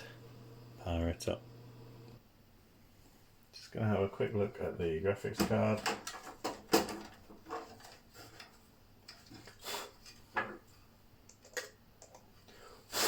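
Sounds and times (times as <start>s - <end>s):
hands handling computer parts: 5.3s - 12.3s.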